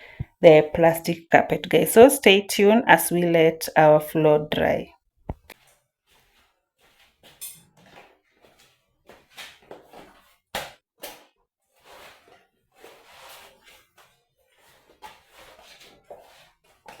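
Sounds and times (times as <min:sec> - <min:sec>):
rustling handling noises: 0:11.1 - 0:17.0.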